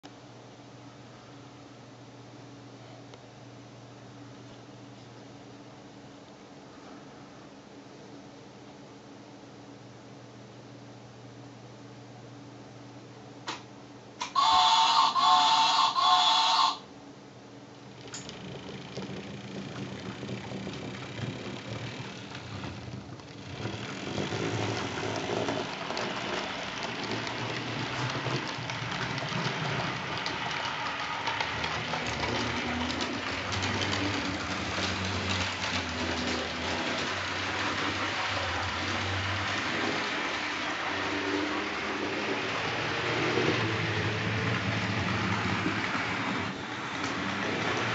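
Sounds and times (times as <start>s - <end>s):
loud whistle-like tone: 14.2s - 16.8s
model train rattling on track: 14.4s - 16.8s, 18.0s - 47.9s.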